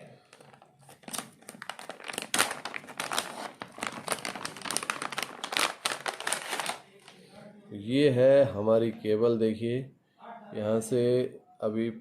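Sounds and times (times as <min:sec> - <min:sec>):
packaging crinkling: 0:00.2 - 0:07.2.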